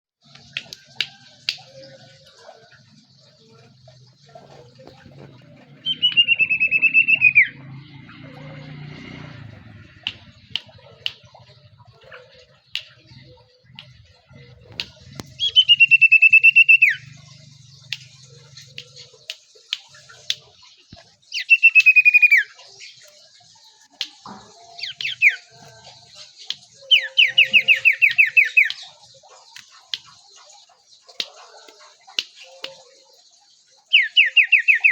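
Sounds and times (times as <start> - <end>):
songbird whistled calls: 5.8 - 7.6, 14.7 - 17.3, 21.3 - 22.6, 26.5 - 29.0, 33.9 - 34.9.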